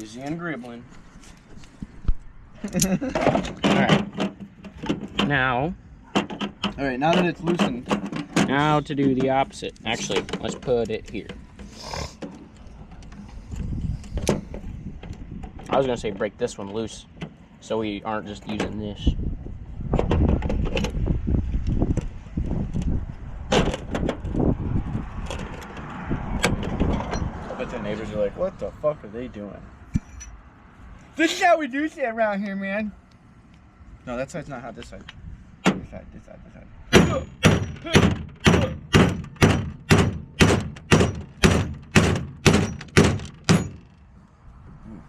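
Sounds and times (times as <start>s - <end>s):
hand tools clicking and knocking: 6.1s - 13.3s, 36.9s - 44.0s
hammer striking metal: 36.9s - 43.9s.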